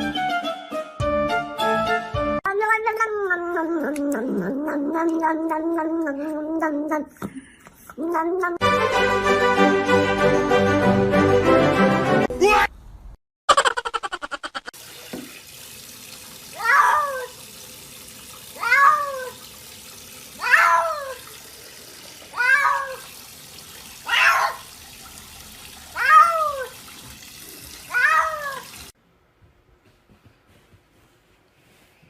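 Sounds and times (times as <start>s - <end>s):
cat meowing: 18.6s - 19.4s, 20.4s - 21.2s, 22.3s - 23.0s, 24.0s - 24.6s, 26.0s - 26.7s, 27.9s - 28.7s.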